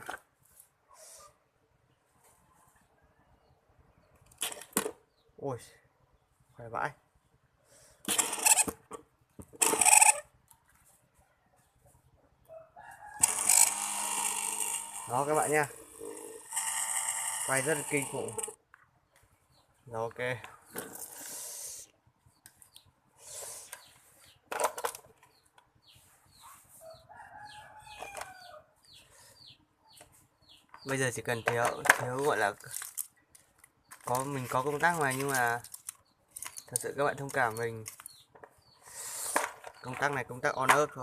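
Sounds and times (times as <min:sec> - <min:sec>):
rooster crowing: 0:12.5 - 0:13.8, 0:26.9 - 0:28.7
electric drill motor whine: 0:13.2 - 0:18.5.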